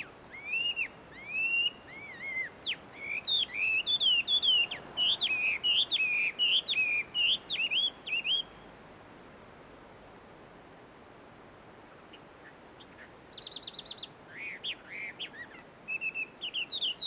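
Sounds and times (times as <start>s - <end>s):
bird singing whistled notes: 0.0s - 8.7s, 12.8s - 17.0s.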